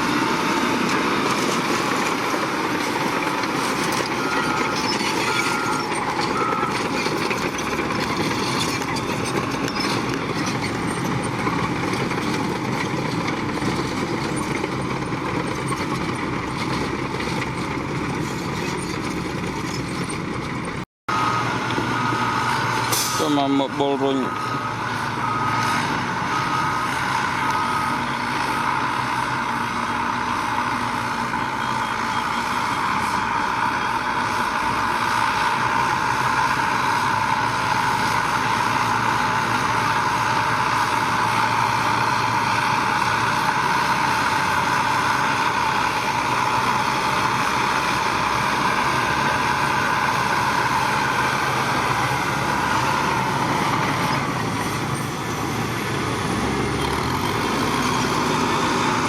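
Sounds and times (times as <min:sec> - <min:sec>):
heavy construction machinery running: 0:00.0 - 0:59.0
reversing alarm beeping: 0:03.2 - 0:08.6, 0:21.1 - 0:34.6.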